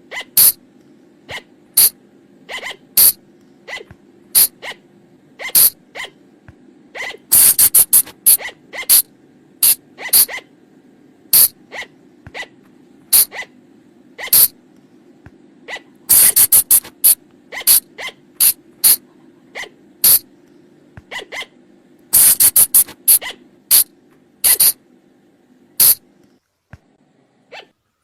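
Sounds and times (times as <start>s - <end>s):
high-pitched animal squeaks: 0.0s - 0.6s, 1.3s - 4.8s, 5.4s - 6.2s, 7.0s - 10.5s, 11.4s - 13.6s, 14.2s - 14.6s, 15.7s - 20.2s, 21.1s - 21.6s, 22.2s - 24.8s, 27.5s - 27.8s
low steady hum: 0.0s - 28.0s.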